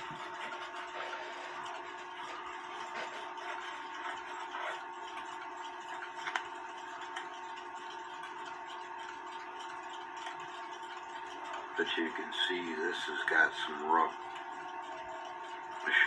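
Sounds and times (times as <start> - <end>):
rubbing and small clicks of polishing: 0.0 - 12.0
steady electrical hum: 0.0 - 16.0.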